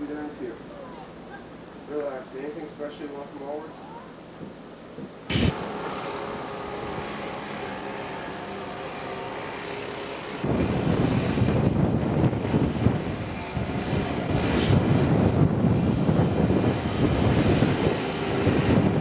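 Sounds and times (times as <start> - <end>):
steady mechanical hum: 0.0 - 19.0
wind buffeting microphone: 5.3 - 5.6, 10.4 - 19.0.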